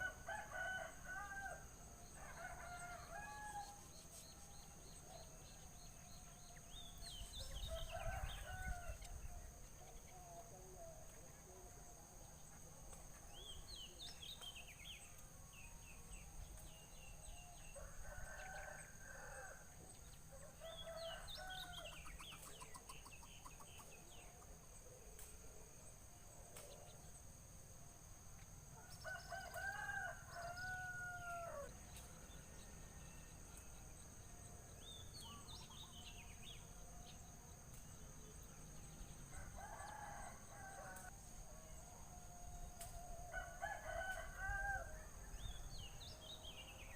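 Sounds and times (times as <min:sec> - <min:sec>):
faint rooster crowing: 0:00.0 - 0:03.9, 0:07.4 - 0:09.6, 0:17.4 - 0:22.2, 0:28.8 - 0:31.8, 0:39.3 - 0:45.4
small birds chirping: 0:19.9 - 0:24.5.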